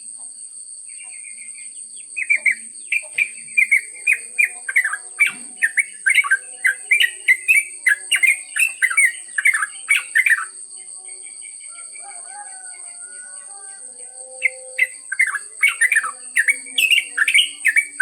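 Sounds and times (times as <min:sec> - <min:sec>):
high insect drone: 0:00.0 - 0:18.0
bird singing whistled notes: 0:01.0 - 0:10.6, 0:14.3 - 0:18.0.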